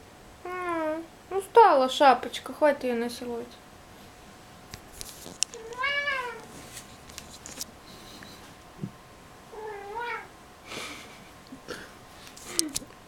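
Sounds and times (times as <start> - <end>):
cat meowing: 0.4 - 1.0, 5.6 - 6.5, 9.5 - 10.3
faint rustles: 3.8 - 9.0, 10.7 - 13.0.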